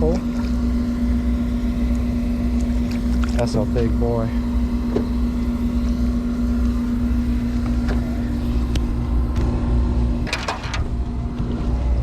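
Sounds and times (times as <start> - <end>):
boat motor humming: 0.0 - 12.0
low rumble: 3.9 - 12.0.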